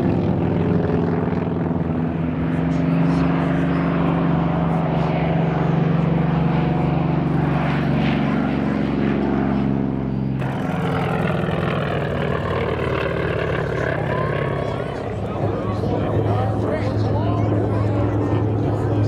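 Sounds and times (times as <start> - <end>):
noisier aircraft sound: 0.0 - 19.0
propeller aircraft engine running: 0.0 - 19.0.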